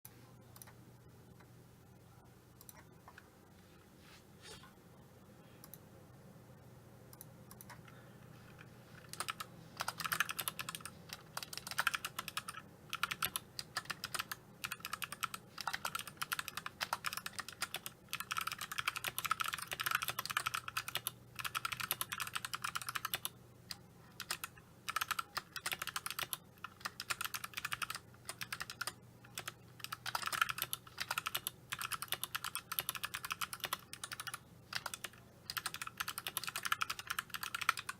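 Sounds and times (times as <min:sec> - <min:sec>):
clicky mechanical keyboard typing: 0:09.0 - 0:37.9.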